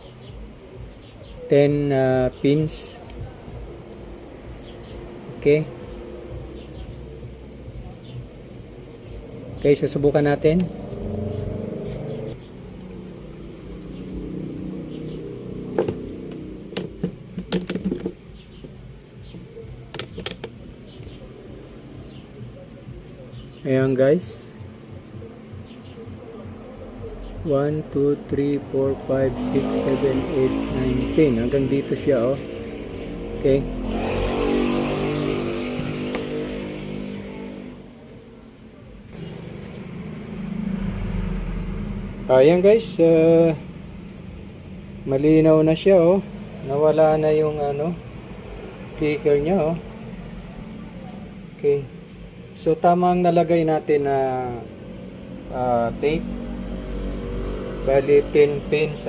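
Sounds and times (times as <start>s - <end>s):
low steady background sound: 0.0s - 59.0s
vehicle engine running: 5.8s - 18.6s
sharp clicks and taps: 15.8s - 20.6s.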